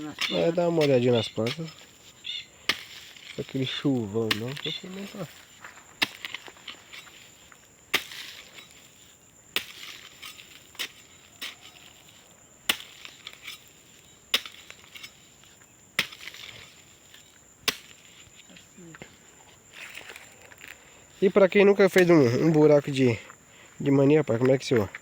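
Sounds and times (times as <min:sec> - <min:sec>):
digging tool chopping dry soil: 0:00.0 - 0:18.6
high insect drone: 0:00.0 - 0:25.0.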